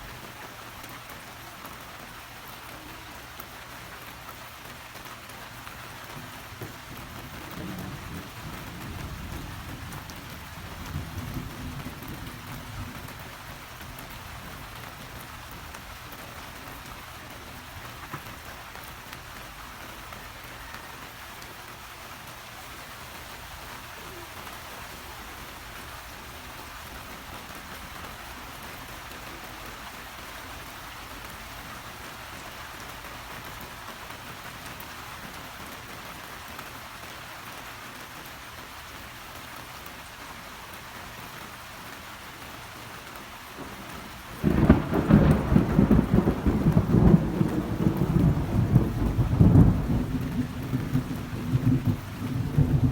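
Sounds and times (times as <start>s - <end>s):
heavy rain falling: 0.0s - 52.9s
rumbling thunderclap: 43.6s - 52.9s.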